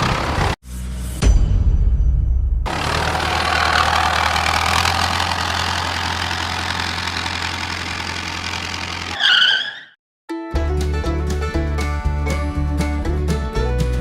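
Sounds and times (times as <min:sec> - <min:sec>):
vehicle engine running: 0:00.0 - 0:00.6, 0:02.7 - 0:09.2.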